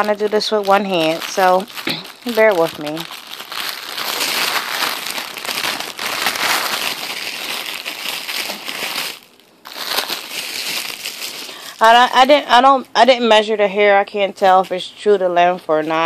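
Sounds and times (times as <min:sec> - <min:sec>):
packaging crackling and rustling: 0:00.0 - 0:12.4.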